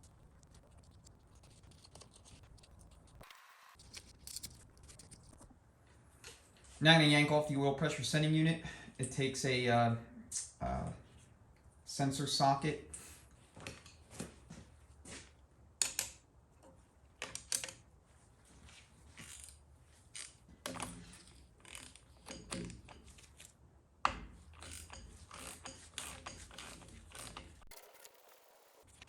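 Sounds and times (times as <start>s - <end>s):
ratchet clicking: 24.6s - 27.6s.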